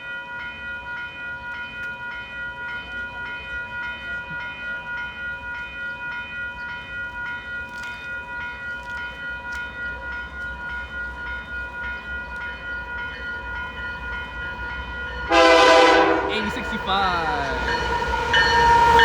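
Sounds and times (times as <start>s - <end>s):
railway bell ringing: 0.0s - 19.0s
diesel locomotive rumble: 15.3s - 19.0s.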